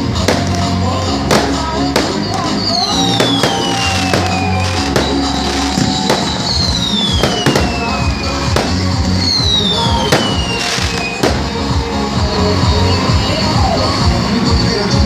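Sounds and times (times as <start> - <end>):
fireworks bangs: 0.0 - 12.3
music playing: 0.0 - 15.0.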